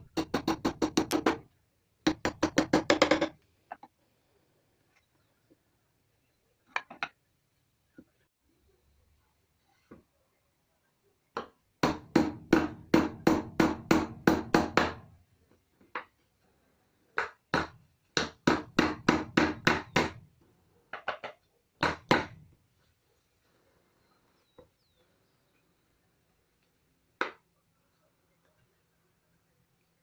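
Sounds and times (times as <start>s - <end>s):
hammer driving nails into wood: 0.0s - 1.5s, 11.4s - 15.1s, 17.2s - 20.2s, 21.0s - 22.4s.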